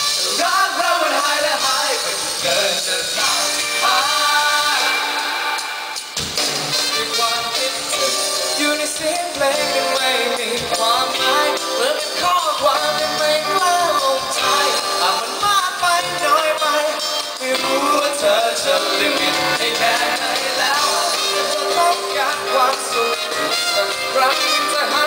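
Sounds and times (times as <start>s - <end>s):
band playing pop-rock: 0.0s - 25.0s
person singing lead vocal: 0.0s - 25.0s.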